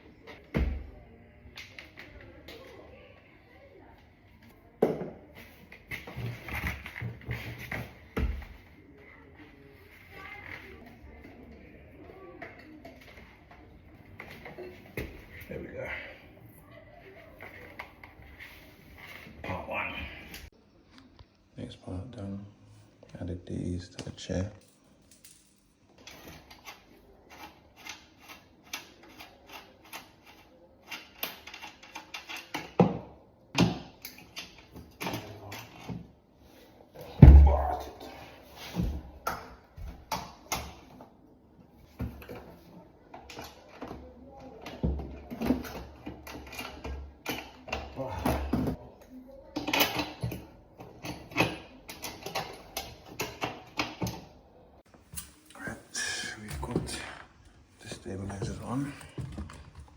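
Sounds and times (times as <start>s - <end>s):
bike parts and tools clicking: 25.1s - 32.9s.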